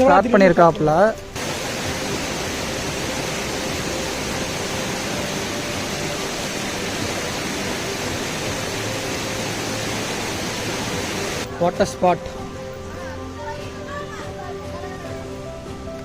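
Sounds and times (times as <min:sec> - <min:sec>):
rushing falling water: 0:00.5 - 0:13.0.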